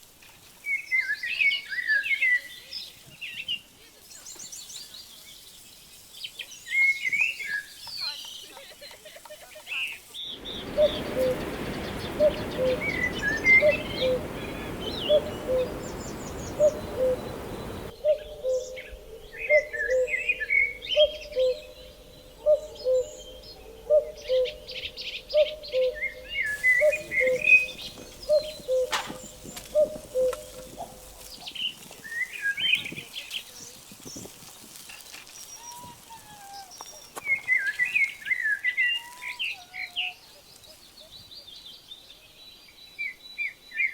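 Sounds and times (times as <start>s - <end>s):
songbirds chirping: 0.2s - 43.9s
even hiss: 2.7s - 18.0s, 26.0s - 37.2s.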